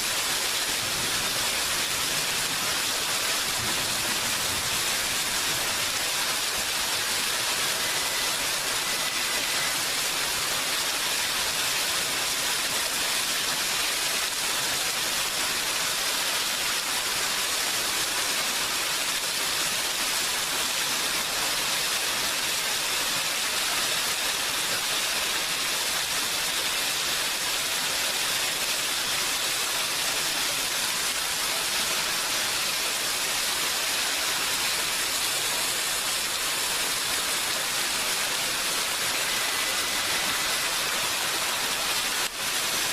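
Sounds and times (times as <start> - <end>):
steady rainfall: 0.0 - 42.9.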